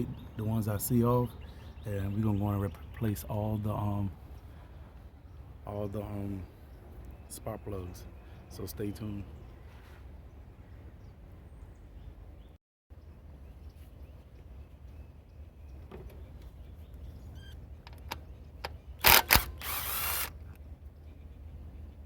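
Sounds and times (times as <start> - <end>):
impact wrench buzzing: 19.0 - 20.5.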